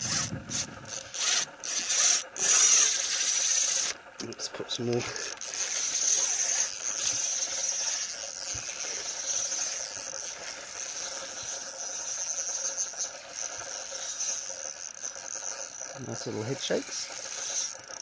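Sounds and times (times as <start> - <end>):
fishing reel drag buzzing: 0.0 - 4.1, 4.8 - 18.0.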